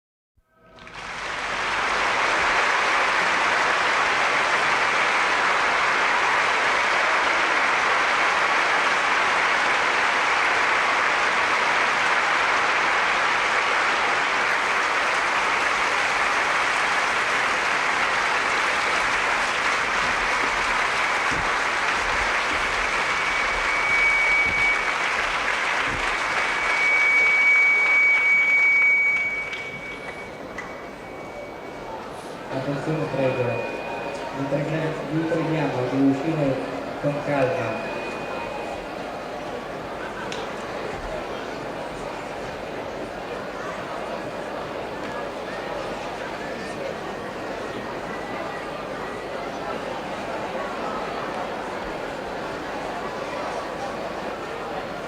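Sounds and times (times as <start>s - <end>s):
crowd applause: 0.6s - 55.0s
high whistle-like tone: 22.7s - 35.4s, 37.1s - 39.5s.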